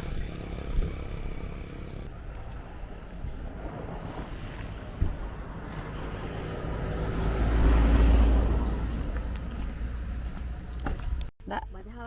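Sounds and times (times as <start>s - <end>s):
motor vehicle rumble: 0.0s - 11.3s.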